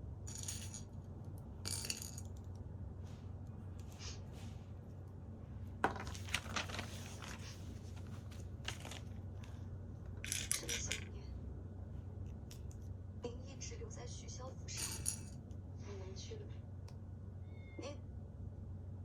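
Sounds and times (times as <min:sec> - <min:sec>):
steady low hum: 0:00.0 - 0:19.0
plastic bricks clicking and rattling: 0:10.2 - 0:11.1.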